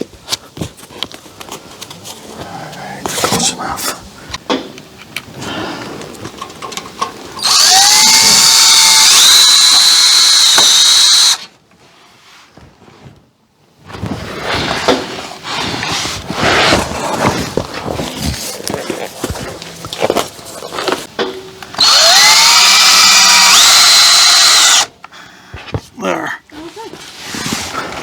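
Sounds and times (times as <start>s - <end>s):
power drill driving a screw: 7.4s - 11.5s, 21.8s - 24.9s
rustling: 11.7s - 21.1s, 25.6s - 28.0s.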